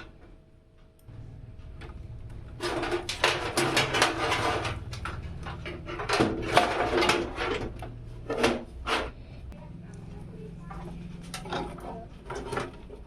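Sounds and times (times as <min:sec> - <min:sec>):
low hum: 0:00.3 - 0:06.4.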